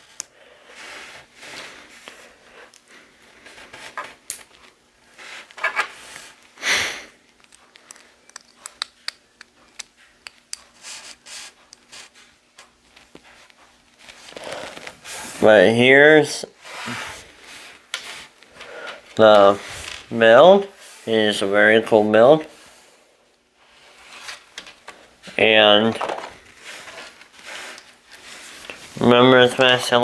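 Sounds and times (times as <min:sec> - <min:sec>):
plastic bricks clicking and tapping: 0:07.3 - 0:10.6.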